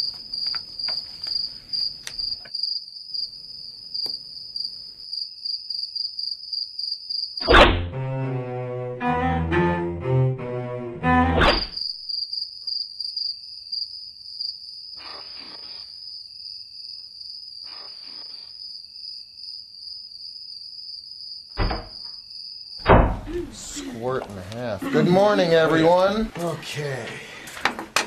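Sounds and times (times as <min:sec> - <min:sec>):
cello and double bass music: 0:07.7 - 0:11.8.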